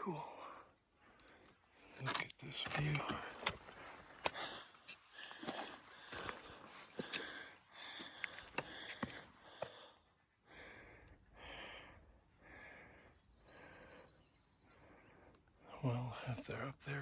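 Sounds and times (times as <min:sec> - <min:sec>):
footsteps scuffing: 0:03.6 - 0:07.3
person breathing hard: 0:04.2 - 0:15.6.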